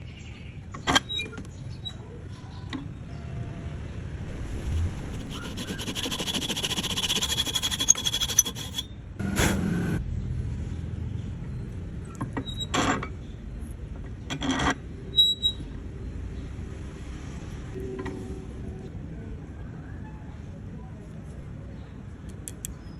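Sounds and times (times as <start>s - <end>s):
scraping or rubbing: 4.3s - 8.9s
tool rasping against wood: 4.6s - 8.9s.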